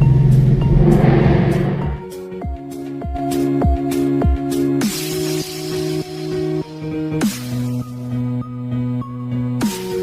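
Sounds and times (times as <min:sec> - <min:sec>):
rising noise sweep: 0:00.2 - 0:02.2.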